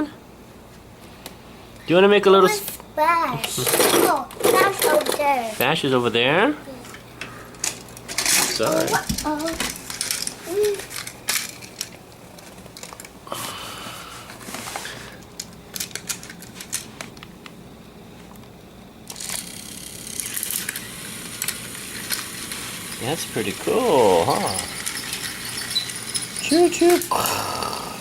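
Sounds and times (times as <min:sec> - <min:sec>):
toy trains clicking and clattering: 0:03.4 - 0:05.4, 0:07.6 - 0:13.1, 0:15.4 - 0:16.9, 0:19.1 - 0:27.5.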